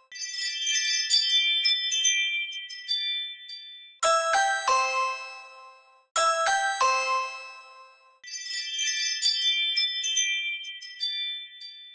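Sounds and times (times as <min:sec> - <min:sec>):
doorbell chime notes: 0:04.0 - 0:05.6, 0:06.2 - 0:07.9
tinkling wind-chime notification tone: 0:04.1 - 0:05.6, 0:06.2 - 0:11.3.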